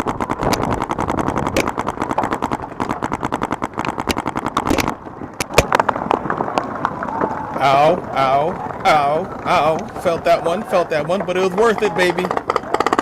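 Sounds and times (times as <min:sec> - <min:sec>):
paintball markers firing: 0:00.0 - 0:06.0.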